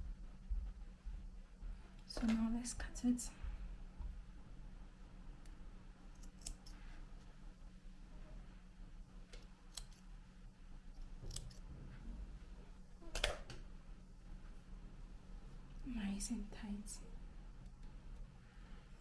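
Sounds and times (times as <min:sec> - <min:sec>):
scissors snipping yarn: 0:06.1 - 0:06.8, 0:09.4 - 0:10.1, 0:11.0 - 0:11.6.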